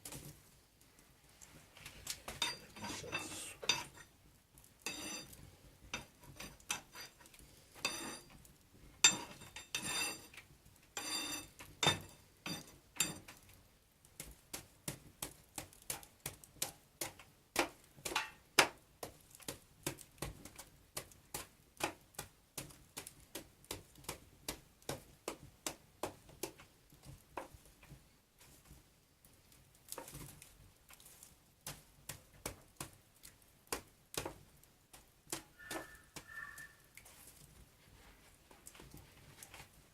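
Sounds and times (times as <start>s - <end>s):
metal utensils clinking: 2.4s - 4.1s, 9.0s - 10.3s.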